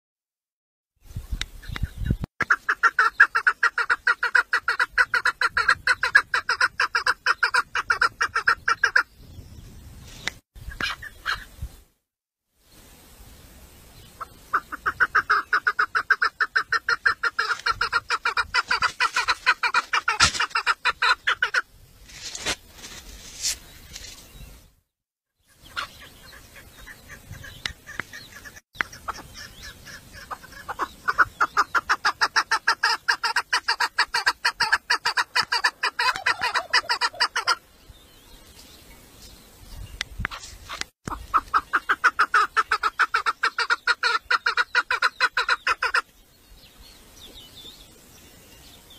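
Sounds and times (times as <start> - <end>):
partridge clucking calls: 1.6 - 9.1, 10.6 - 11.6, 14.2 - 21.7, 25.5 - 37.6, 40.1 - 46.1.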